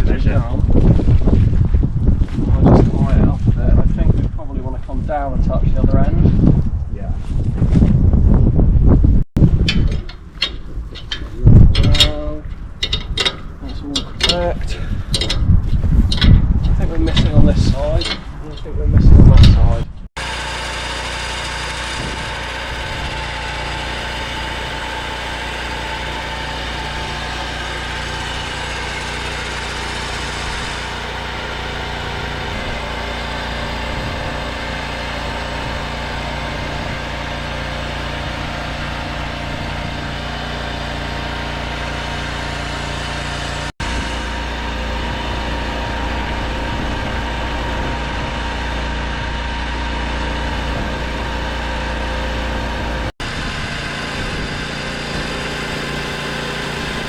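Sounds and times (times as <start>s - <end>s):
sawmill engine running: 20.2s - 57.0s.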